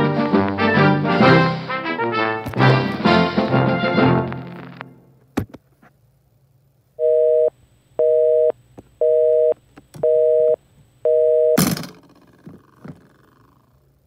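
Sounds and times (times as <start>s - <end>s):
telephone busy signal beeps: 7.0s - 11.6s.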